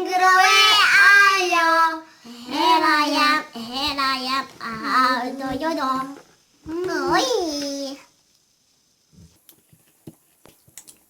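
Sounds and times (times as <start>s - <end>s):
child singing: 0.0s - 8.0s.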